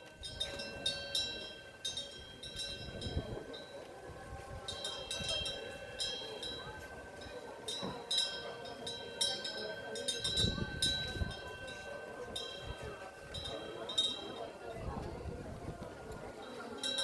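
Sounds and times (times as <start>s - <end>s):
metal wind bell ringing: 0.0s - 17.0s
low rush of wind: 0.2s - 7.3s, 10.2s - 16.5s.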